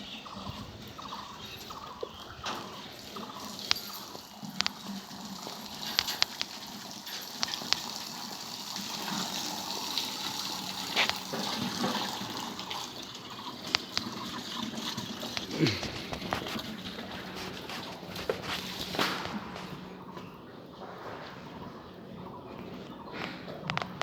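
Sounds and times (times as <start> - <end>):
running water rushing: 2.9 - 19.8.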